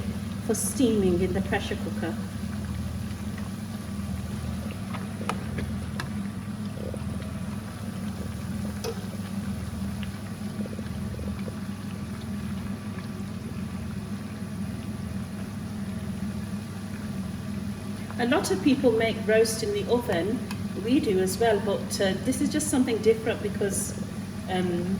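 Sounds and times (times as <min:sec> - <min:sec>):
continuous low hum: 0:00.0 - 0:24.9
meat deep-frying in hot oil: 0:00.0 - 0:24.9
faint utensil ticks: 0:19.6 - 0:20.8.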